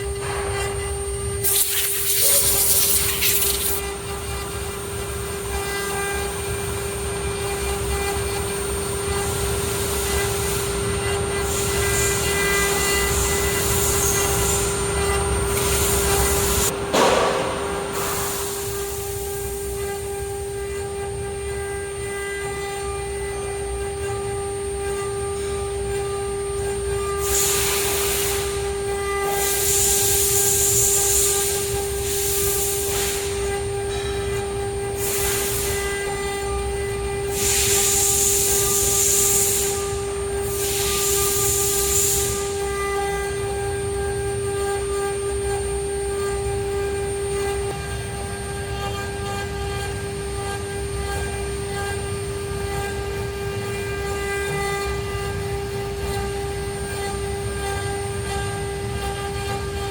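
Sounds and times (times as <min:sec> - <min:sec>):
router cutting rush: 0:01.4 - 0:04.4.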